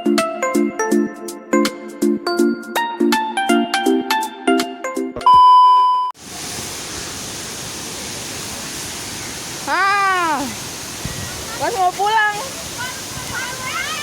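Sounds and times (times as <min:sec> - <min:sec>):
waterfall rushing: 0:06.2 - 0:14.0
voice call: 0:09.6 - 0:10.6, 0:11.2 - 0:14.0.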